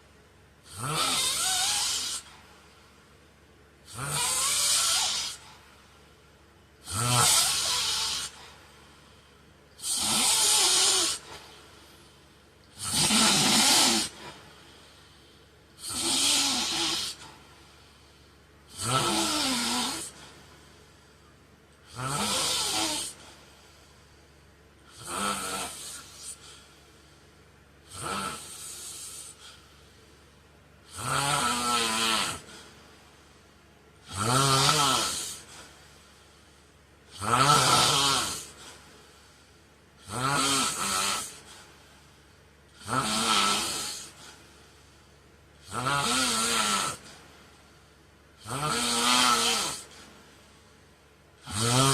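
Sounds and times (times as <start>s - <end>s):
man snoring: 0.6s - 2.4s, 3.8s - 5.9s, 6.8s - 9.1s, 9.8s - 20.5s, 21.8s - 23.8s, 24.8s - 26.7s, 27.8s - 29.7s, 30.8s - 32.8s, 34.0s - 35.8s, 36.4s - 39.4s, 40.0s - 41.8s, 42.7s - 44.5s, 45.6s - 47.5s, 48.4s - 50.3s, 51.4s - 51.9s.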